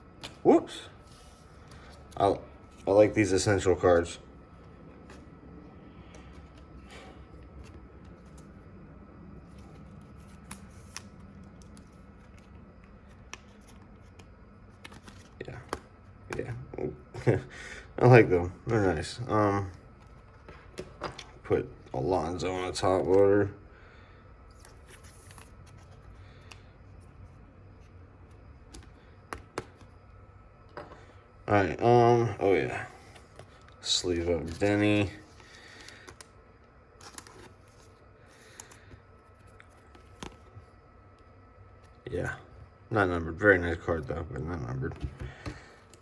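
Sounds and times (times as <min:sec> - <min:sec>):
low steady hum: 0:00.0 - 0:46.0
cards rustling: 0:00.1 - 0:42.7, 0:43.5 - 0:46.0
cards clicking: 0:09.5 - 0:16.7, 0:24.5 - 0:26.7, 0:28.2 - 0:30.0, 0:37.0 - 0:40.6.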